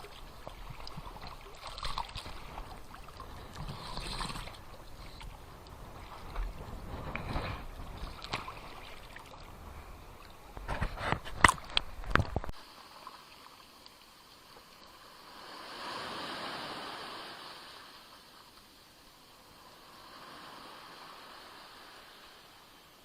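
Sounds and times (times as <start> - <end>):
wind rumbling on microphone: 0.0 - 12.6
small waves splashing at shore: 0.0 - 23.0.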